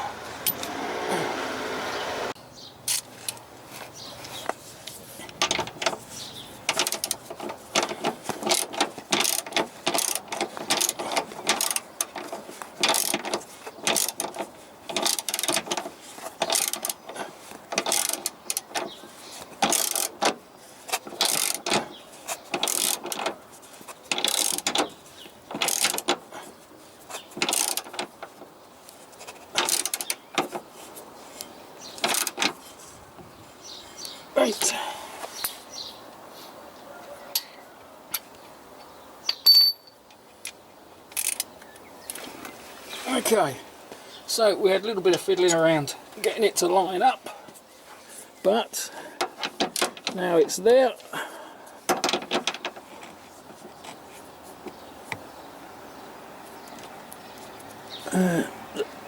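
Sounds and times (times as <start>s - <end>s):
ratchet wrench clicking: 7.8s - 11.8s, 12.8s - 15.7s, 16.4s - 17.0s, 17.8s - 18.7s, 19.6s - 20.2s, 21.2s - 21.8s, 22.6s - 23.3s, 24.1s - 24.9s, 25.6s - 26.1s, 27.4s - 28.0s.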